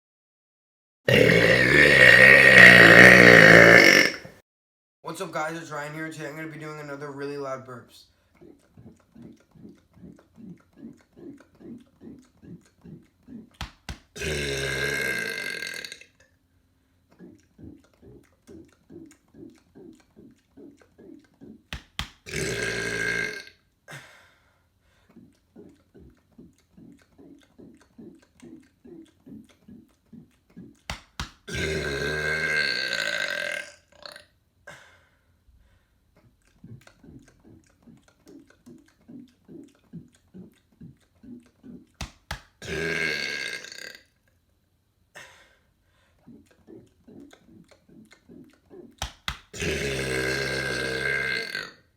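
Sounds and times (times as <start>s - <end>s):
man burping loudly: 1.1s - 4.4s, 14.2s - 16.1s, 22.2s - 23.5s, 31.5s - 34.2s, 42.6s - 44.1s, 49.5s - 51.8s.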